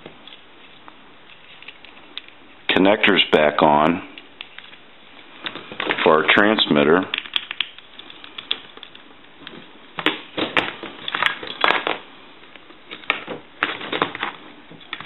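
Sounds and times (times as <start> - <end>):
small parts clicking and clattering: 0.2 - 2.4.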